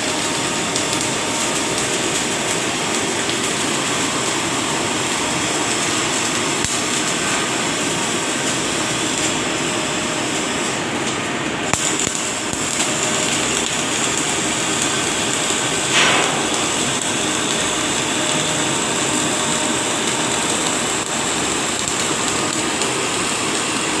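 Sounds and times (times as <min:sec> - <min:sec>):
welding arc crackling: 0:00.0 - 0:24.0.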